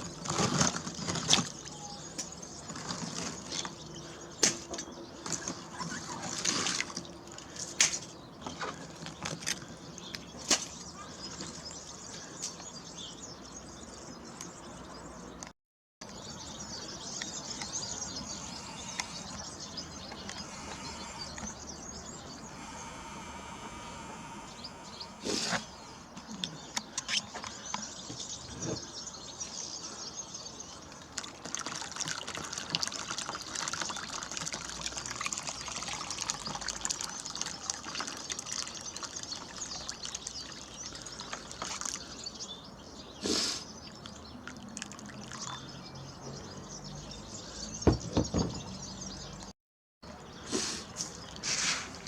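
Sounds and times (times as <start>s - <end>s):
fine crackling patter of pouring: 0.0s - 4.4s, 5.1s - 13.1s, 29.2s - 43.1s, 43.8s - 46.2s
louder knocks: 47.9s - 48.7s.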